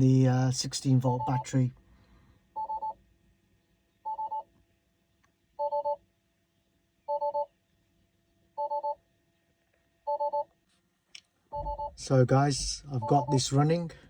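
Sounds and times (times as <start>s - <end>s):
electronic alert beeps: 1.0s - 1.6s, 11.5s - 13.8s.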